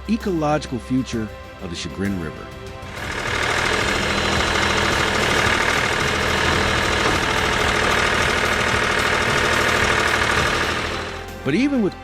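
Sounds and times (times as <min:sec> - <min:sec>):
excavator diesel engine clattering: 0:02.9 - 0:12.0.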